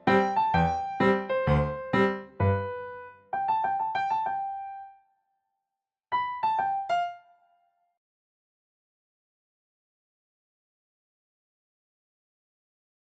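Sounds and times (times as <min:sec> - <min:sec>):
piano-like keyboard music: 0:00.0 - 0:05.0, 0:06.1 - 0:07.6.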